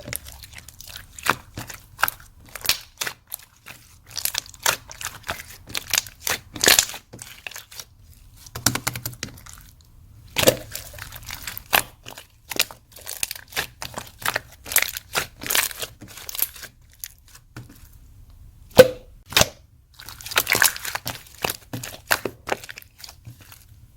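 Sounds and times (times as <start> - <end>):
slime crackling and popping: 0.0 - 17.9, 18.7 - 23.8
slime snapping: 2.6 - 3.2.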